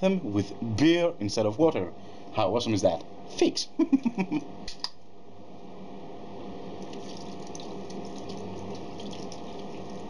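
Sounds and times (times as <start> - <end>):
beer pouring trickle: 6.8 - 10.0.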